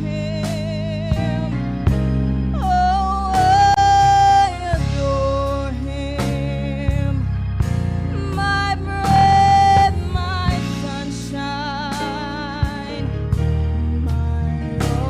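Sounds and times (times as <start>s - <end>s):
gospel music: 0.0s - 15.0s.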